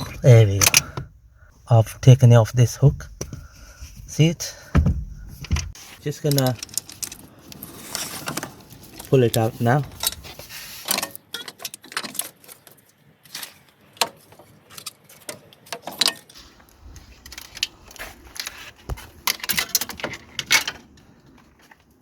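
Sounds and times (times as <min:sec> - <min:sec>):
cable clicking and scraping: 0:05.2 - 0:21.9.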